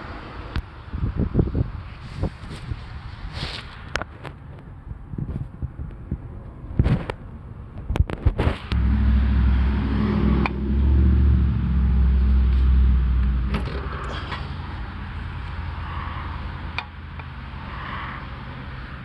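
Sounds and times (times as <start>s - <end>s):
car engine idling: 8.8s - 17.3s.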